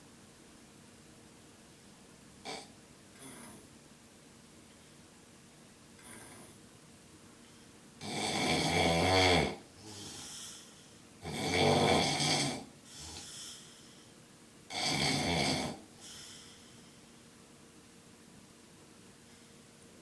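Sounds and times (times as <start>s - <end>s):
man snoring loudly: 8.0s - 10.6s, 11.2s - 13.6s, 14.7s - 15.8s
soft breath: 12.8s - 14.2s, 16.0s - 17.2s.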